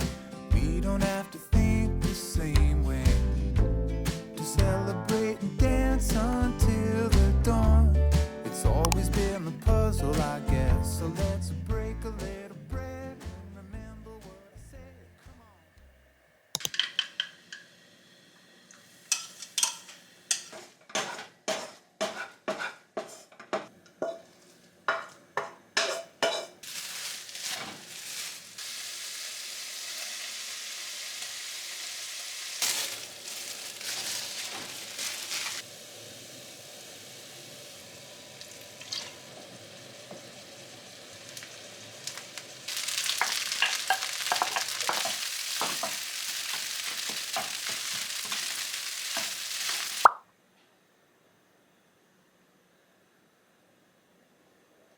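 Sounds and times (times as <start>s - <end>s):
food sizzling in a frying pan: 16.7s - 21.2s, 25.8s - 50.1s.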